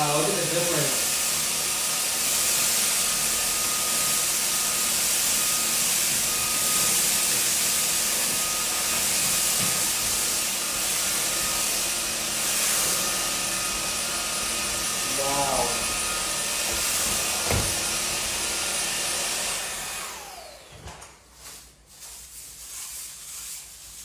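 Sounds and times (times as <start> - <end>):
stick vacuum running: 0.0 - 21.2.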